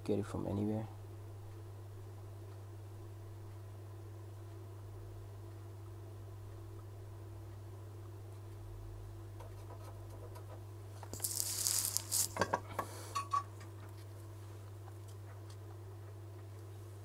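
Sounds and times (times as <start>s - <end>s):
electrical hum: 0.0s - 17.0s
rustle: 11.1s - 12.5s.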